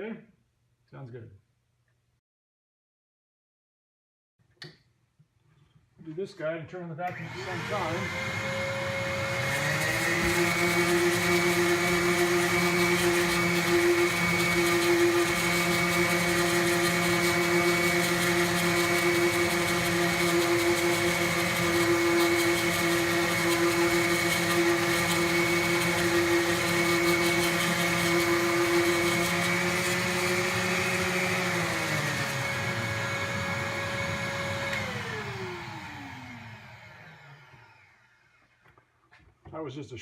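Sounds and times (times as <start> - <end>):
orbital sander on wood: 7.1 - 38.1
dust extraction vacuum: 7.1 - 38.6.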